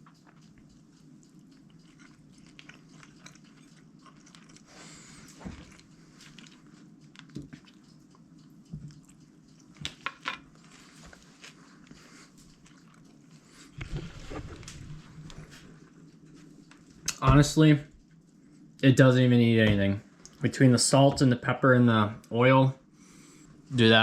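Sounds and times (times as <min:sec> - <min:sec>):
person chewing crispy fish: 0:00.0 - 0:13.8.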